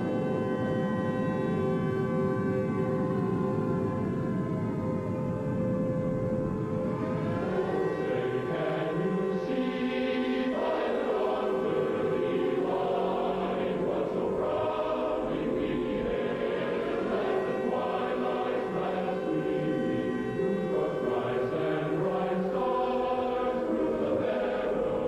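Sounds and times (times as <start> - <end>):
steady drone: 0.0 - 25.0
choir singing held notes: 7.4 - 25.0.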